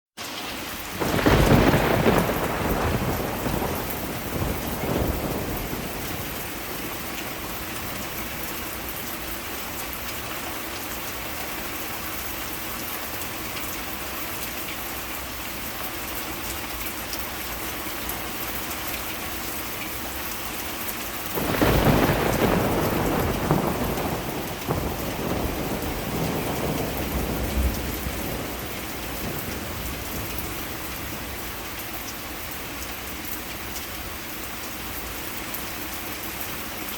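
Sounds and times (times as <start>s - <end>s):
heavy rain: 0.2s - 36.9s
thunder rolling: 0.9s - 8.2s, 21.4s - 31.4s.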